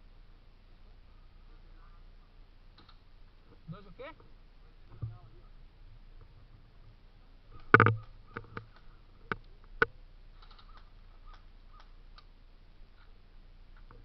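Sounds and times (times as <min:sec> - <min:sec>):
sharp clicks and knocks: 0:07.5 - 0:12.3.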